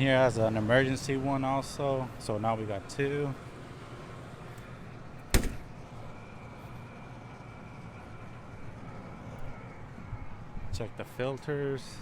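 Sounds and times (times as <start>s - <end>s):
faint steady whine: 0.0s - 12.0s
hvac unit running: 0.0s - 12.0s
sharp knock: 5.3s - 5.7s.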